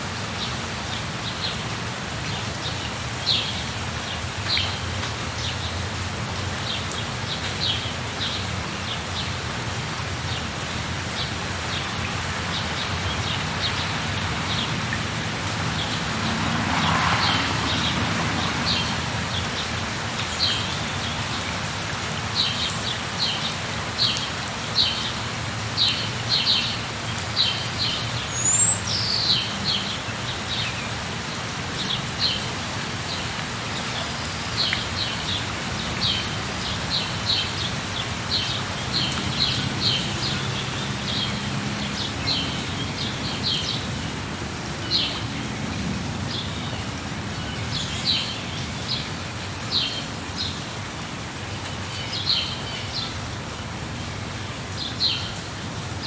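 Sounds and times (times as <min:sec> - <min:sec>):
steady rain falling: 0:00.0 - 0:56.0
small birds chirping: 0:25.8 - 0:31.0.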